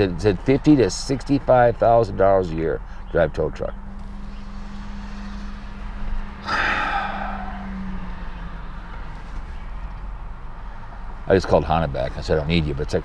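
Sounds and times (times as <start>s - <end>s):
steady low hum: 1.8s - 11.3s
man sighing: 6.4s - 8.0s.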